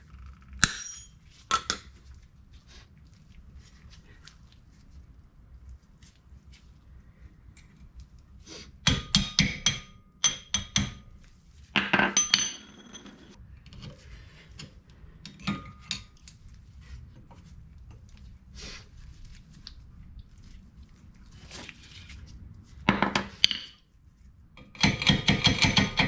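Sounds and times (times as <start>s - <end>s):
metal tools tapping metal: 0.6s - 1.8s, 8.9s - 11.0s, 11.8s - 13.4s.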